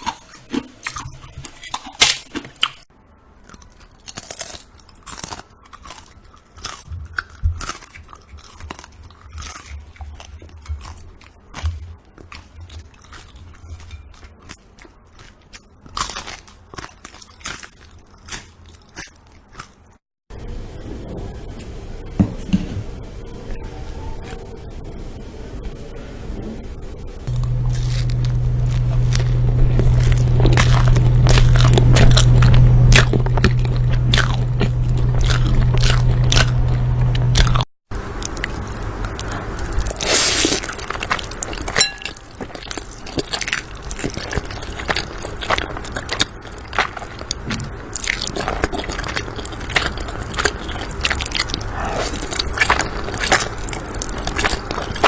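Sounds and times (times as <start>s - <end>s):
chewing and crunching: 0.0s - 20.0s, 27.2s - 55.0s
steady low hum: 20.3s - 40.0s.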